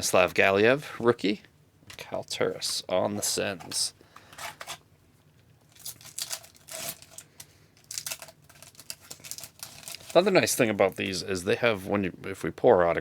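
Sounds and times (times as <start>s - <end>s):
wrapper crinkling and rustling: 5.7s - 11.2s.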